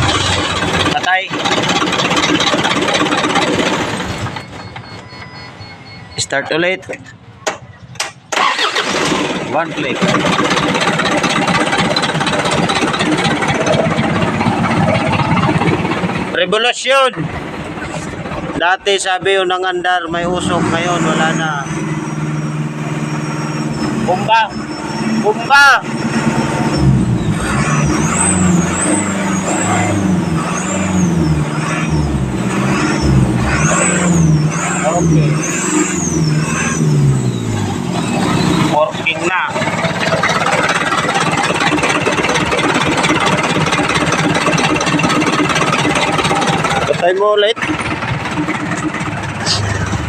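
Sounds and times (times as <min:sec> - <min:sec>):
diesel engine running: 0:00.0 - 0:50.0
high whistle: 0:04.1 - 0:06.4.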